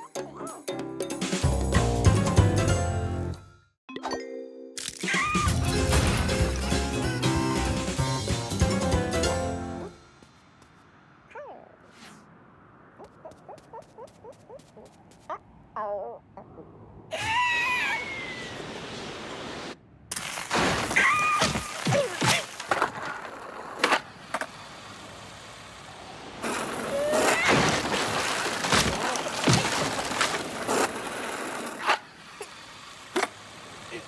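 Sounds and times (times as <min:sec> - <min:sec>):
cartoon crashes and thuds: 0:05.0 - 0:06.7, 0:20.2 - 0:22.6
cartoon character cries: 0:17.1 - 0:18.6.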